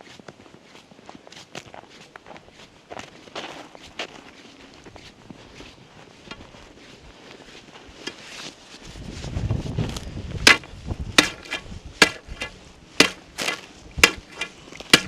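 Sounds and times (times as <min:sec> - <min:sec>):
ice crunching: 0:09.9 - 0:15.0
strikes cracking thin ice: 0:10.4 - 0:15.0.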